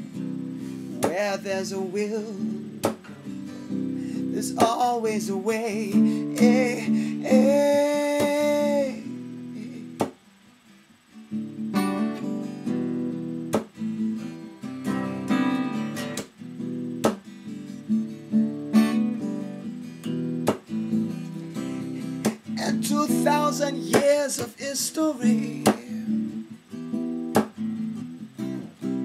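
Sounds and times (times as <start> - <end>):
acoustic guitar strumming reggae: 0.0 - 29.0
percussive guitar chop: 0.1 - 29.0
person singing: 1.0 - 2.6, 4.2 - 10.0, 22.0 - 26.3.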